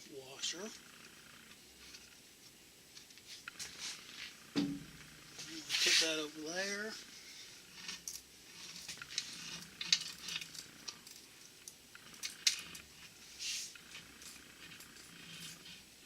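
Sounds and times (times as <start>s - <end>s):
metal scrape: 3.7s - 6.3s
small metal parts clinking: 7.7s - 13.2s.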